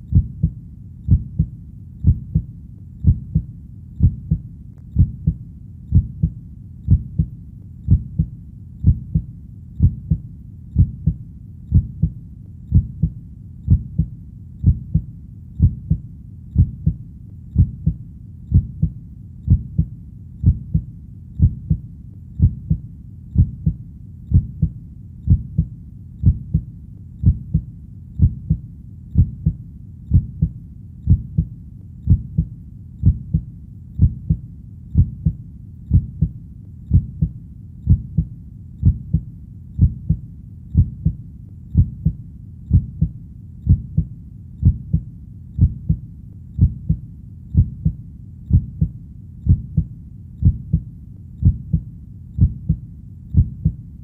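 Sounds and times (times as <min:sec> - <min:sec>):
heartbeat double thump: 0:00.1 - 0:04.4, 0:05.0 - 0:07.3, 0:07.9 - 0:10.2, 0:10.8 - 0:16.0, 0:17.6 - 0:21.8, 0:22.4 - 0:22.8, 0:23.4 - 0:28.6, 0:29.2 - 0:31.5, 0:32.1 - 0:34.4, 0:35.0 - 0:37.3, 0:37.9 - 0:39.2, 0:39.8 - 0:40.2, 0:40.8 - 0:41.2, 0:41.8 - 0:43.1, 0:43.7 - 0:45.0, 0:45.6 - 0:46.0, 0:46.6 - 0:47.0, 0:47.6 - 0:48.9, 0:49.5 - 0:51.8, 0:52.4 - 0:52.8, 0:53.4 - 0:53.8.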